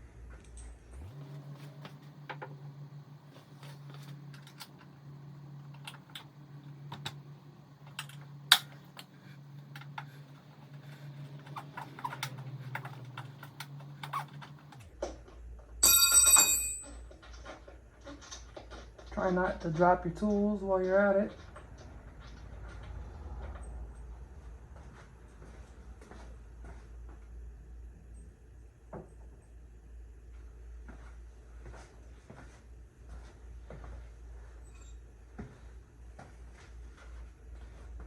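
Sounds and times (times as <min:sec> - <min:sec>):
steady low hum: 0:01.0 - 0:14.9
hand tools clicking and tapping: 0:01.3 - 0:14.8.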